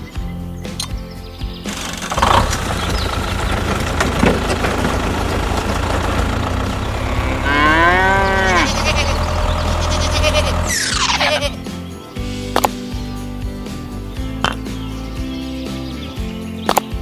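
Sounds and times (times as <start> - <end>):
cow mooing: 7.0 - 11.6.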